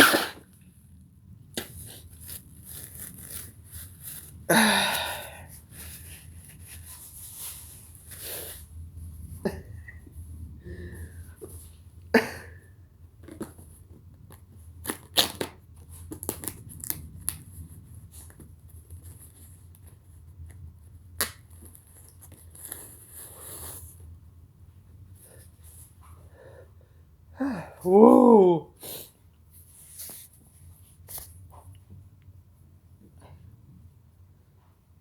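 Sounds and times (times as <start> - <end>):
rustles: 1.6 - 4.5, 5.2 - 8.8.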